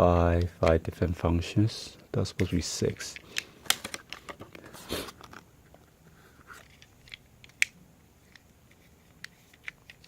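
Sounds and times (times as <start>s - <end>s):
fidget cube rustle: 2.3s - 10.0s.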